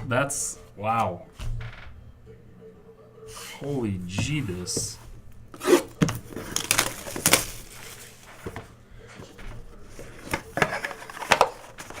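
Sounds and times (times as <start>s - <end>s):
cards and wrappers rustling: 4.3s - 12.0s.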